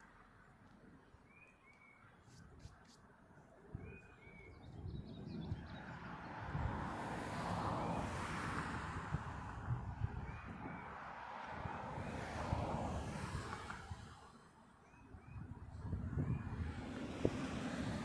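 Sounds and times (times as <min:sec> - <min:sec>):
quiet outdoor background: 0:00.0 - 0:18.0
bird chirps: 0:03.7 - 0:05.9.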